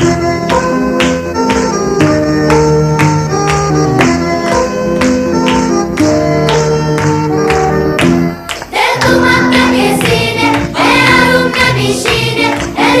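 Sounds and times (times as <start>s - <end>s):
instrumental music: 0.0s - 13.0s
voices singing: 8.7s - 13.0s.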